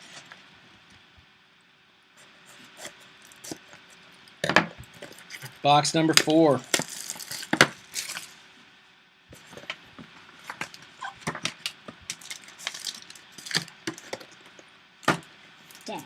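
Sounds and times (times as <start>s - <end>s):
wrapper and cardboard rustling: 6.2s - 8.4s, 10.4s - 14.2s.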